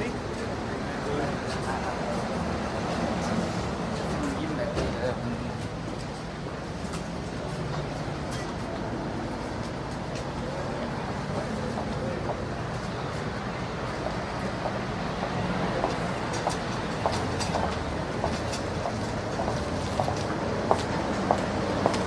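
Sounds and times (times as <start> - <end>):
low rumble of traffic: 0.0 - 22.0
footsteps clicking past: 5.6 - 22.0.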